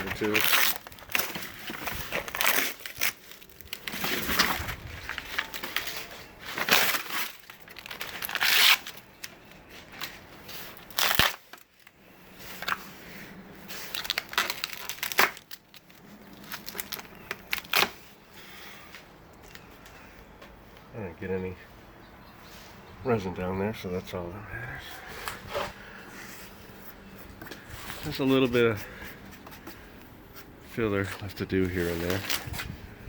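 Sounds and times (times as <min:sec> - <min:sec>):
fabric tearing and crinkling: 0:00.0 - 0:11.9, 0:13.6 - 0:18.2.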